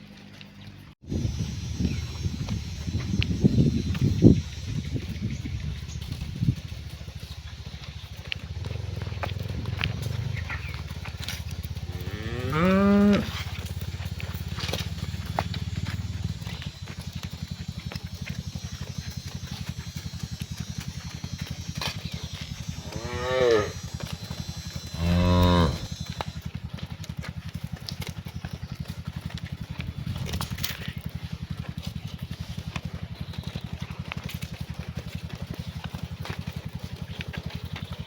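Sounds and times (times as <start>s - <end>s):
cows mooing: 8.4s - 26.4s.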